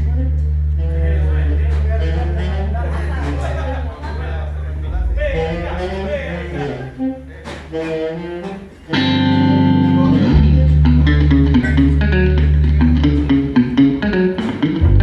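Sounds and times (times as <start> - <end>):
bass guitar line: 0.0 - 7.1, 8.9 - 15.0
electric guitar: 8.9 - 15.0.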